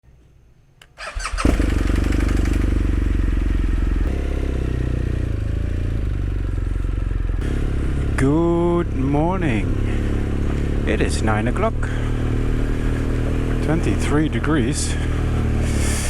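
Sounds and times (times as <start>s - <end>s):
motorcycle engine starting and idling: 0.8s - 16.0s.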